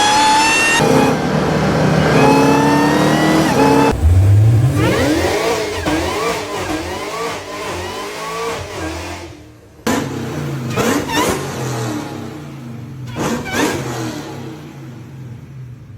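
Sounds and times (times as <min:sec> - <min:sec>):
louder engine blipping: 0:00.0 - 0:09.2
supercharged car engine revving: 0:00.0 - 0:15.9.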